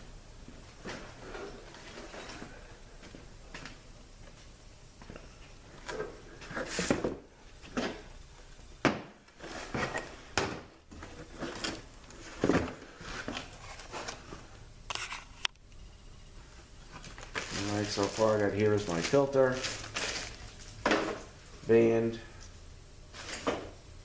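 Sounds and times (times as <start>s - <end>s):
parts knocking on workbench: 8.8s - 9.2s
packaging rustling: 16.9s - 20.8s.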